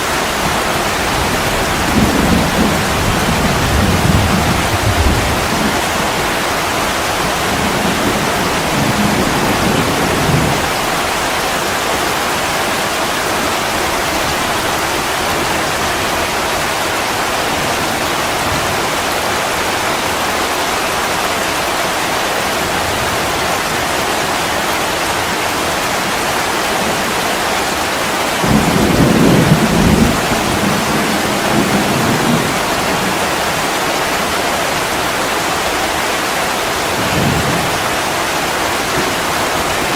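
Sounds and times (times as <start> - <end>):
steady rain falling: 0.0 - 39.9
thunder rolling: 0.4 - 10.8, 28.3 - 33.6.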